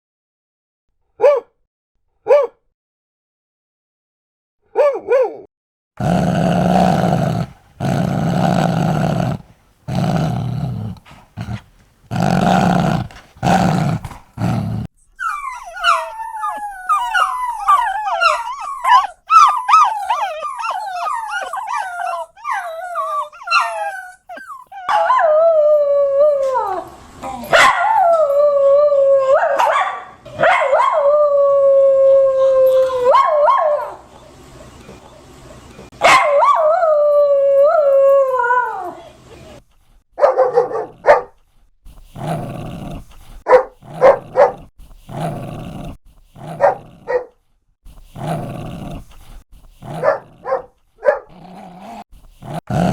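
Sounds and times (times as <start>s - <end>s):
dog growling: 6.0s - 24.9s, 41.9s - 47.3s, 48.0s - 52.9s
dog howling: 12.1s - 26.9s, 30.6s - 34.0s
dog whimpering and yipping: 15.1s - 25.2s.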